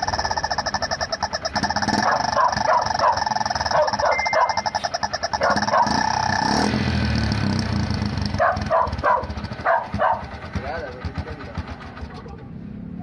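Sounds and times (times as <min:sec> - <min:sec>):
short rising squawks: 0:00.0 - 0:06.7
engine exhaust pulsing note: 0:00.0 - 0:11.9.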